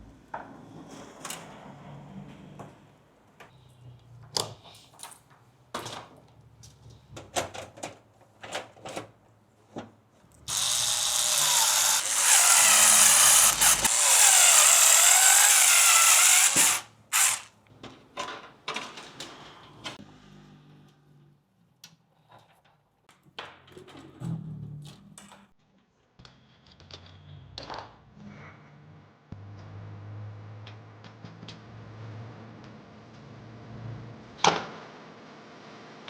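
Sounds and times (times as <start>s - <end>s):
power tool motor whining: 10.5s - 17.5s.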